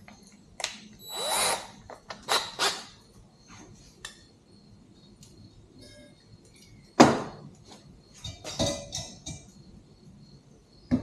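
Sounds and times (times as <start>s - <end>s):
drill whirring: 1.1s - 1.7s.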